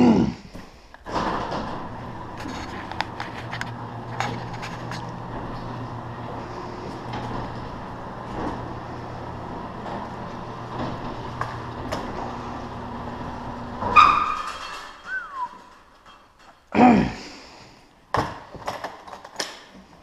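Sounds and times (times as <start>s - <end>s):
garage door opener running: 1.0s - 16.5s
loud clank: 13.8s - 16.6s
short falling squeak: 13.9s - 15.8s.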